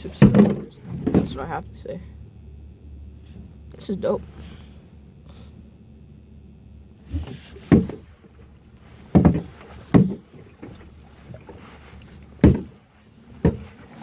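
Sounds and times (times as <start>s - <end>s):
low steady background: 0.0s - 14.0s
paddle knocking on kayak: 7.2s - 8.1s, 9.0s - 14.0s.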